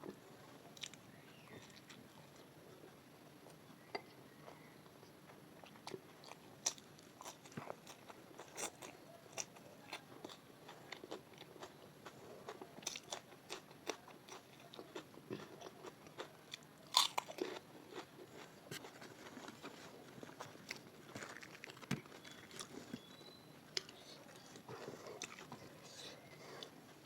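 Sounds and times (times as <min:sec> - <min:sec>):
wet chewing: 0:05.6 - 0:26.8.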